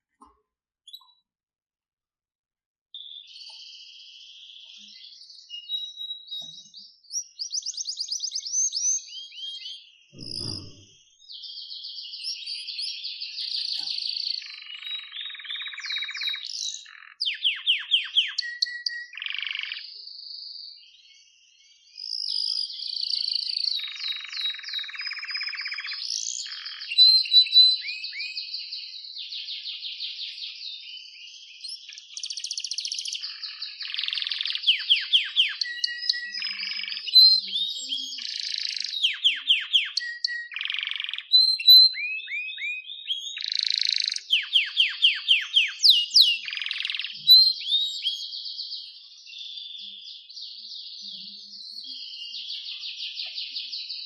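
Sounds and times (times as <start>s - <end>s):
canary singing trills: 3.0s - 10.9s, 11.8s - 20.0s, 22.0s - 28.4s, 31.1s - 48.8s.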